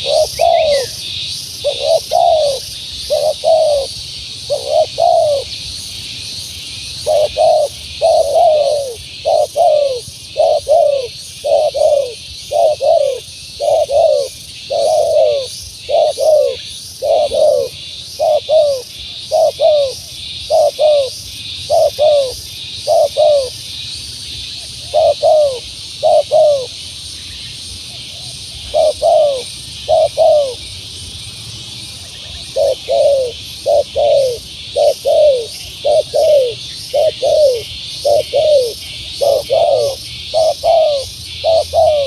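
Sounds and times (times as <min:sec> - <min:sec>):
dove cooing: 0:00.0 - 0:01.0, 0:01.6 - 0:05.7, 0:06.9 - 0:23.6, 0:24.6 - 0:26.8, 0:27.9 - 0:30.7, 0:32.1 - 0:42.0.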